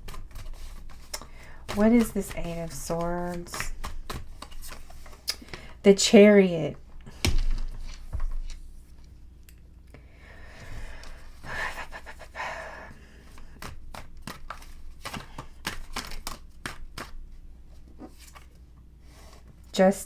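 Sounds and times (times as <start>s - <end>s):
cards clicking and tapping: 0.0s - 5.7s, 7.2s - 8.7s, 13.3s - 17.2s
cards rustling: 0.0s - 5.7s, 13.3s - 17.2s.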